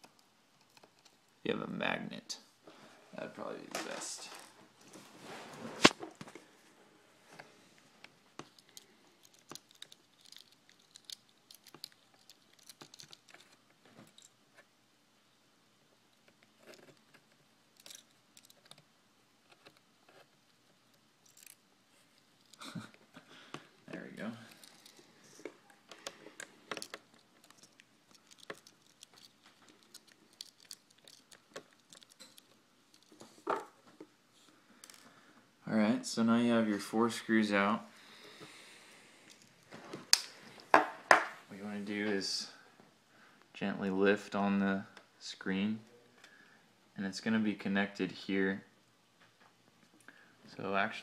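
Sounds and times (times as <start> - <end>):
tiny screws clicking and scraping: 0.0 - 1.3, 8.4 - 14.7, 16.1 - 22.9, 23.9 - 33.4, 34.8 - 35.1.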